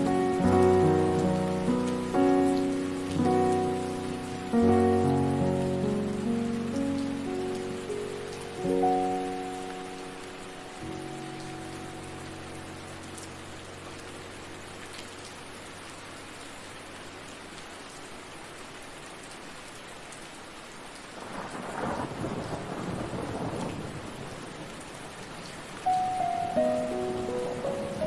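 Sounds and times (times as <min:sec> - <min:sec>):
soft music: 0:00.0 - 0:17.6, 0:25.8 - 0:28.0
steady rain falling: 0:00.0 - 0:28.0
thunder rolling: 0:21.2 - 0:24.8.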